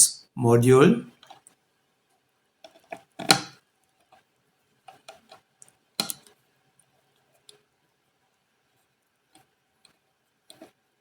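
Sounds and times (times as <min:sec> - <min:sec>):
small clicks and light knocks: 0:04.8 - 0:06.4.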